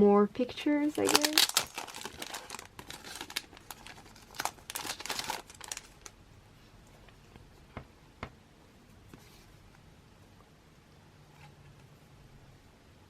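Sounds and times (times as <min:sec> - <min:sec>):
packaging crinkling: 0:00.9 - 0:06.1.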